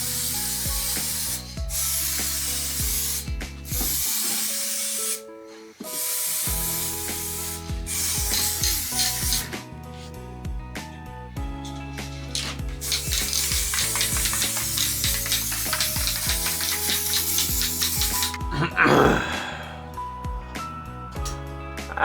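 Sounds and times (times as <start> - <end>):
aerosol spray can hissing: 0.0 - 10.1, 11.7 - 18.5
background music with beat: 0.0 - 18.8, 19.4 - 22.0.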